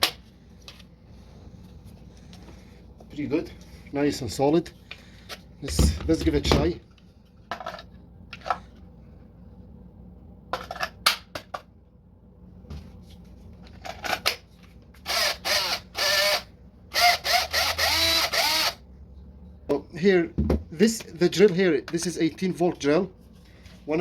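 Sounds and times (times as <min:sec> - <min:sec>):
cordless drill motor whirring: 0:15.0 - 0:18.8.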